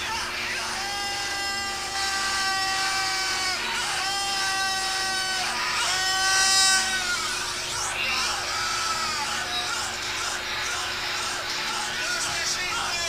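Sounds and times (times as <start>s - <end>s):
commentator shouting: 0.0s - 13.0s
faint steady hum: 0.0s - 13.0s.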